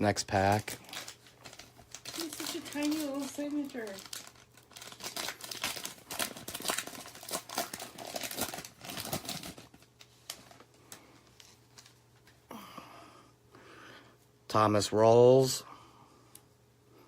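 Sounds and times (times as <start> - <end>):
wrapper crinkling and tearing: 0.3 - 12.4.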